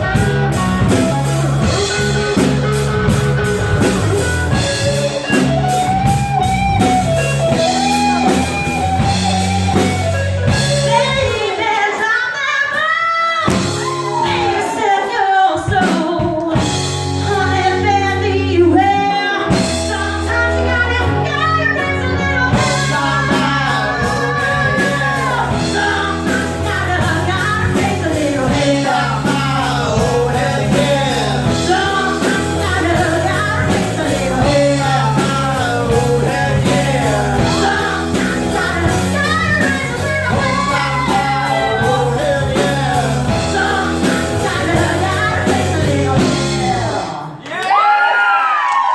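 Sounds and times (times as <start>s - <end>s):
bass guitar: 0.0s - 15.0s, 15.6s - 47.4s
electric guitar: 0.0s - 47.3s
drums: 0.0s - 48.9s
singer with vibrato: 10.5s - 47.4s.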